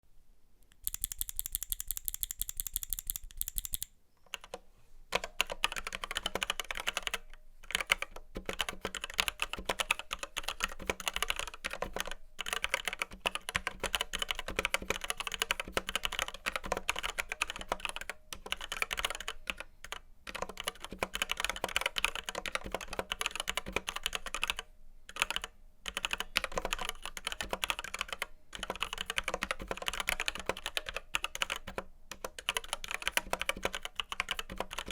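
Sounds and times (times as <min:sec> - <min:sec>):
mechanical keyboard typing: 0:00.7 - 0:04.6, 0:05.2 - 0:34.9.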